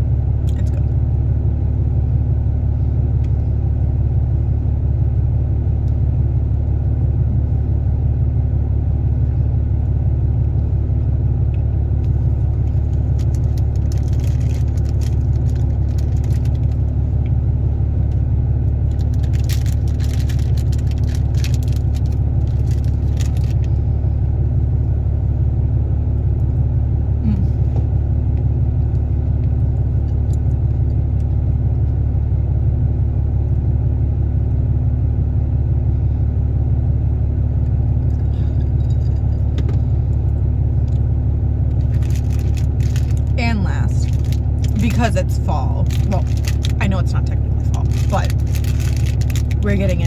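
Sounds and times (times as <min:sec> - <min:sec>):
low background rumble: 0:00.0 - 0:50.0
crisp crackly clicks: 0:12.0 - 0:17.3, 0:18.8 - 0:23.7, 0:41.7 - 0:43.4, 0:44.0 - 0:44.8, 0:45.8 - 0:46.8, 0:47.7 - 0:49.6.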